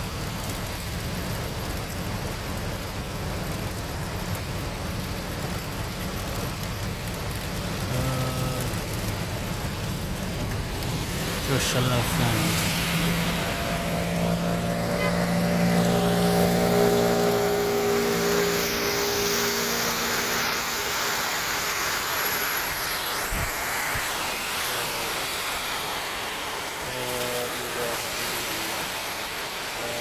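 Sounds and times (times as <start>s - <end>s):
car driving through flood water: 0.0s - 30.0s
heavy rain: 0.0s - 30.0s
steady hum: 7.9s - 25.0s.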